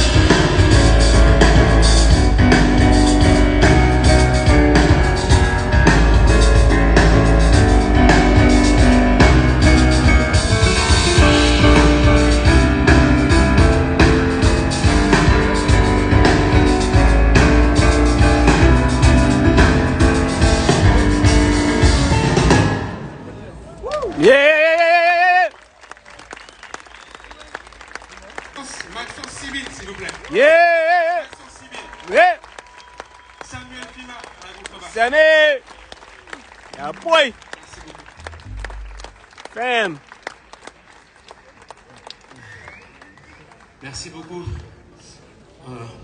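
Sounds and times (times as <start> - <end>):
double bass: 0.0 - 22.9, 38.1 - 39.3
drum kit: 0.0 - 23.3
piano: 0.0 - 24.0.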